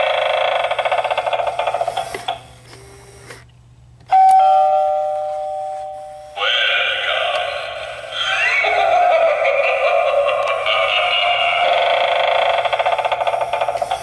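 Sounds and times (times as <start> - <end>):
electronic doorbell chime: 4.1 - 6.4.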